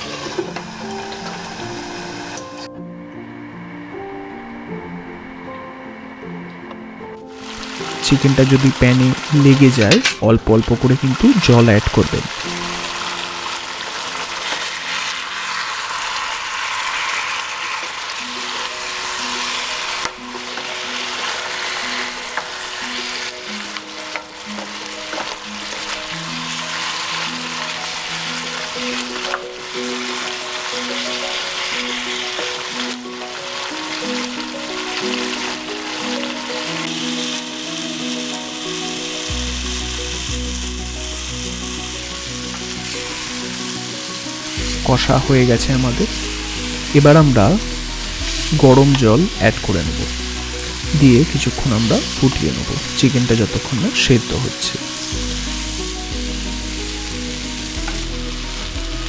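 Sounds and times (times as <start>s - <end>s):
chicken sizzling in a pan: 0.0s - 2.7s, 7.3s - 59.0s
soft background music: 0.0s - 59.0s
background music with bass line: 39.3s - 43.0s, 43.6s - 52.8s, 55.0s - 59.0s.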